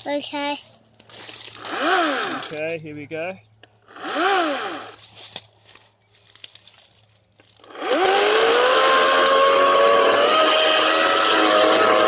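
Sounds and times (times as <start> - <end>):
chainsaw motor whining: 1.4 - 2.7, 3.8 - 5.1, 7.6 - 12.0.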